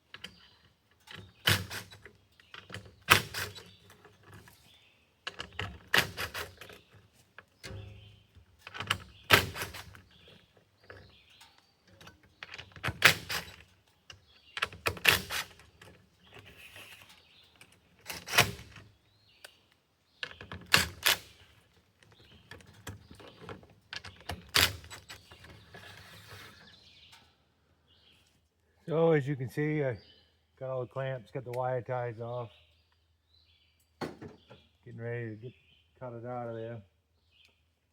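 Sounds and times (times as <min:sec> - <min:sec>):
clamps and ties snapping off: 0:34.0 - 0:34.6.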